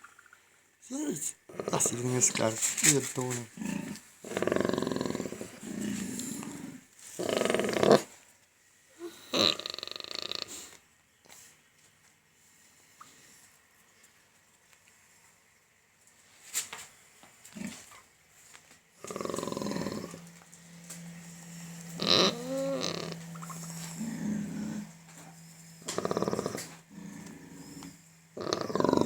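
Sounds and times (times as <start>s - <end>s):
faint low hum: 0.0s - 29.0s
pig grunting and squealing: 3.5s - 8.1s, 17.5s - 18.0s, 19.0s - 29.0s.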